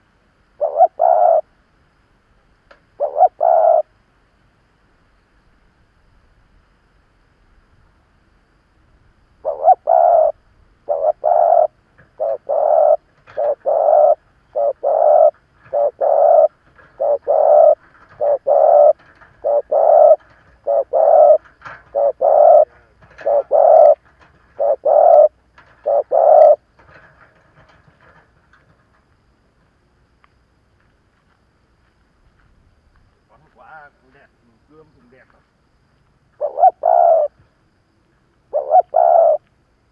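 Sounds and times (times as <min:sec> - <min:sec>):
dove cooing: 0:00.6 - 0:01.5, 0:03.0 - 0:03.9, 0:09.4 - 0:28.2, 0:36.4 - 0:37.4, 0:38.5 - 0:39.4.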